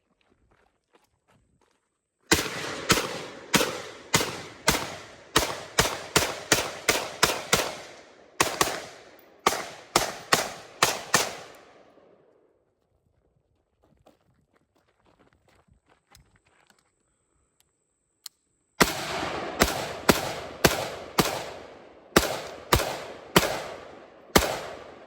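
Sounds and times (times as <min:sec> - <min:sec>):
rifle gunshots with echo: 0:02.3 - 0:12.2, 0:18.8 - 0:25.0.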